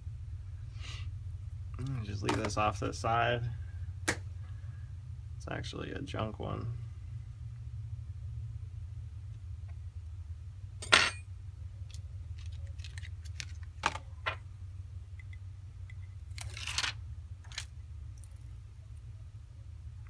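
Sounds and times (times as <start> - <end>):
steady low hum: 0.0 - 20.0
small metal tools clinking: 10.8 - 11.2.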